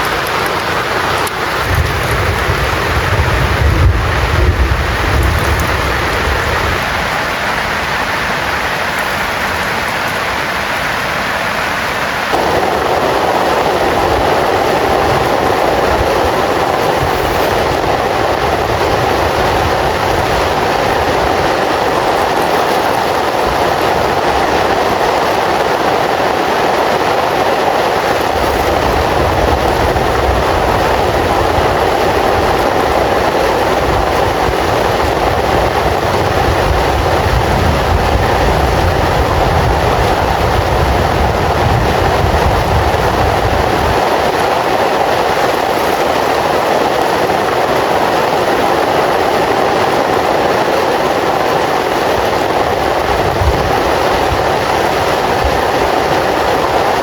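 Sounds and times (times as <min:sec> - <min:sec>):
heavy rain hissing: 0:00.0 - 0:57.0
low rumble: 0:00.9 - 0:07.2.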